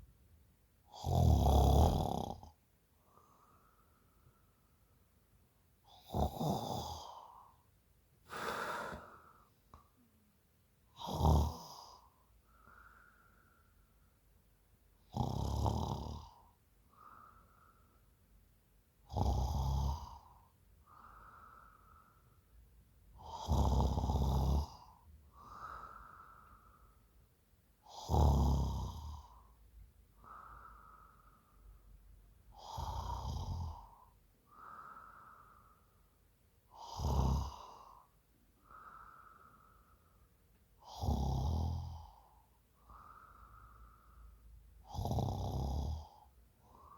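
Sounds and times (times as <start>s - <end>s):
woman snoring: 0.9s - 2.6s, 5.9s - 7.4s, 8.3s - 9.3s, 11.0s - 12.1s, 15.1s - 16.4s, 19.1s - 20.3s, 23.2s - 26.5s, 27.9s - 29.5s, 32.5s - 35.5s, 36.7s - 38.0s, 40.8s - 42.3s, 44.8s - 46.9s.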